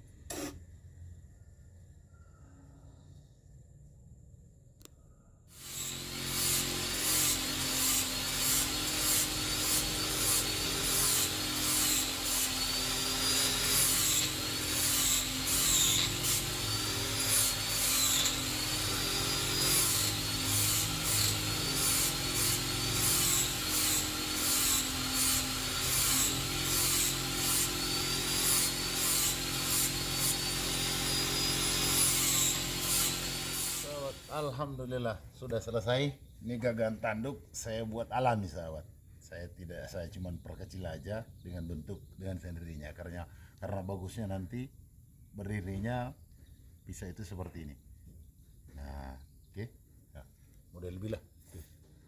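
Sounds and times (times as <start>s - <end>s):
power tool grinding: 5.5s - 34.5s
rasping strokes: 5.5s - 34.5s.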